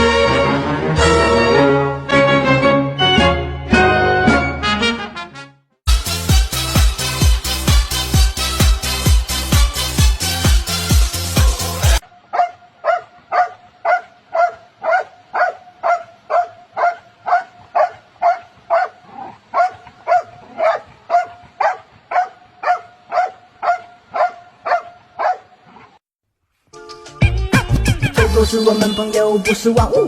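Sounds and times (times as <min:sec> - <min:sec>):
dog barking: 0:12.3 - 0:25.9.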